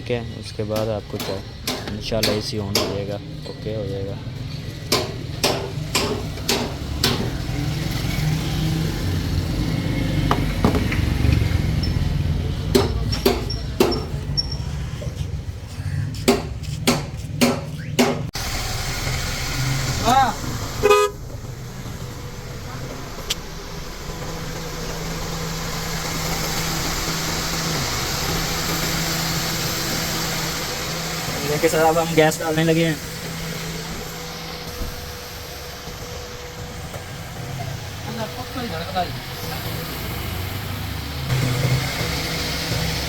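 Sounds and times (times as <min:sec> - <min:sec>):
car engine idling: 0:00.1 - 0:14.5, 0:17.4 - 0:43.0
sharp metallic knocks: 0:00.7 - 0:03.2, 0:04.8 - 0:07.7, 0:12.7 - 0:14.5, 0:16.3 - 0:18.4
even hiss: 0:18.4 - 0:43.0
low hum: 0:18.4 - 0:43.0.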